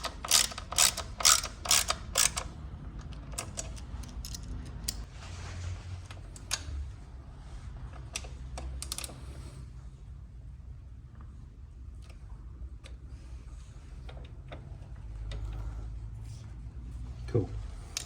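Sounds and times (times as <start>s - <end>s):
ratchet wrench clicking: 0.0s - 2.6s.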